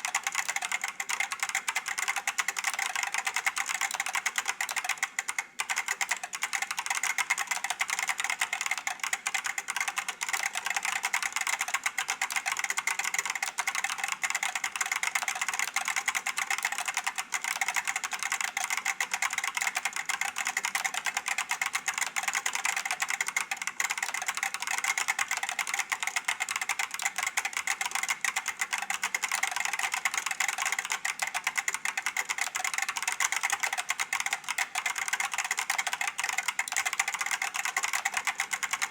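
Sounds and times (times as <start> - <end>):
fast keyboard typing: 0.0 - 38.9.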